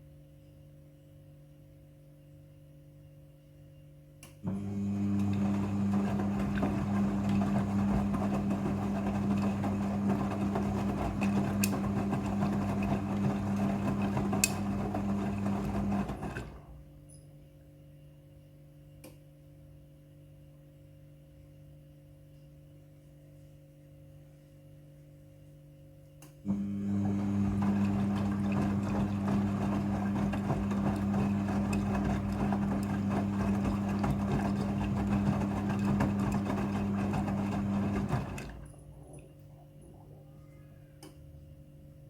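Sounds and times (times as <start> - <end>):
faint electrical hum: 0.0 - 5.4, 16.4 - 29.1, 38.5 - 42.0
washing machine rinsing: 4.5 - 16.8, 26.5 - 39.8.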